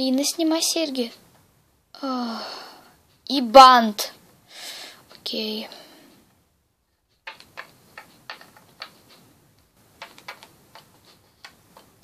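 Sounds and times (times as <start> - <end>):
small plastic clicks and taps: 7.2 - 9.3, 10.0 - 12.0.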